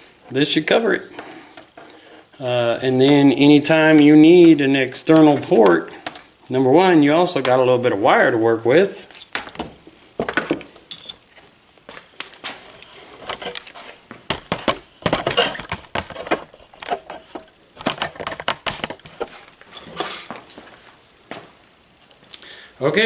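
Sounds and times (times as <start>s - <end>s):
cable and plastic parts rattling: 14.4s - 20.3s.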